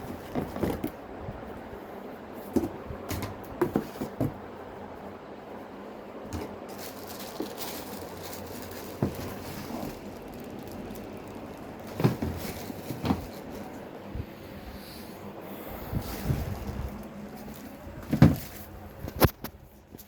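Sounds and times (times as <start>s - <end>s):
vacuum parts knocking and clicking: 0.0s - 1.0s, 8.8s - 10.1s, 11.8s - 13.7s.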